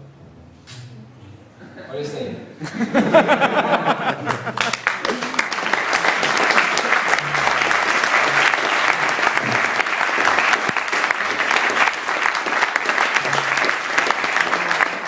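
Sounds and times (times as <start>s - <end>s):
faint background music: 0.0s - 2.6s
audience applauding: 2.9s - 15.0s.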